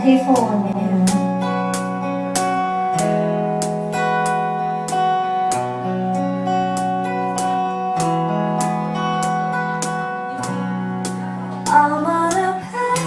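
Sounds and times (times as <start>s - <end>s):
guitar playing chords: 0.0s - 13.0s.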